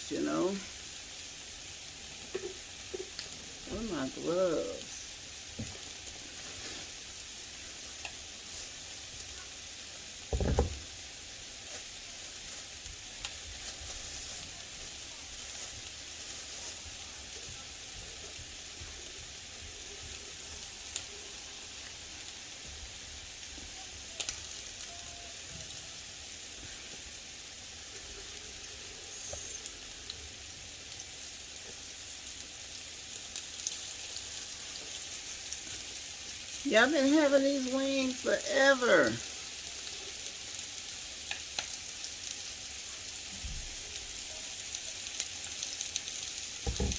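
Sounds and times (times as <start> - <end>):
chicken sizzling in a pan: 0.0 - 46.9
loud thump: 10.3 - 10.8, 46.7 - 46.9.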